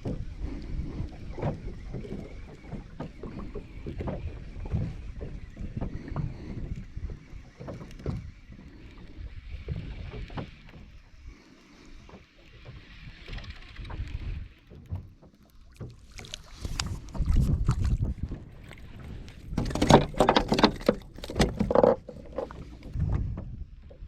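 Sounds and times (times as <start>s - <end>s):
wind on the microphone: 0.0s - 10.6s, 16.4s - 24.0s
water splashing against a boat hull: 0.0s - 24.0s.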